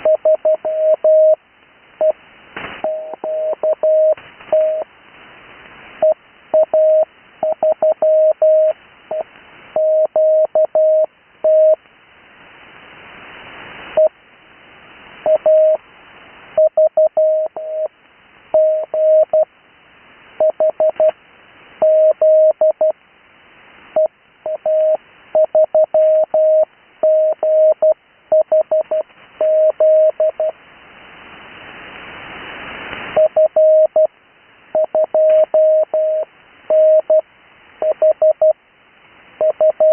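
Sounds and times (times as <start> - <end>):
radio hiss: 0.0 - 27.2, 27.8 - 39.8
morse code tone: 2.8 - 4.8, 34.8 - 37.2, 39.4 - 39.9.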